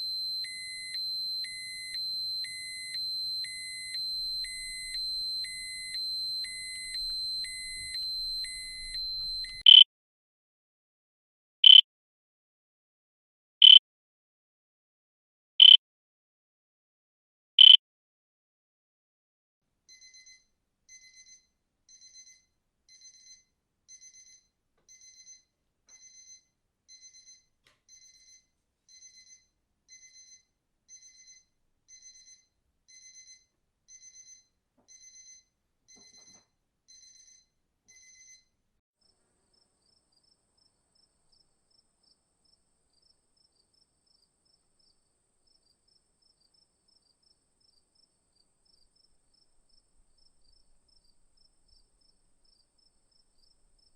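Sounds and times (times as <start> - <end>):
electronic alarm beeping: 0.0 - 9.8, 11.6 - 11.8, 15.6 - 15.8, 17.6 - 17.8.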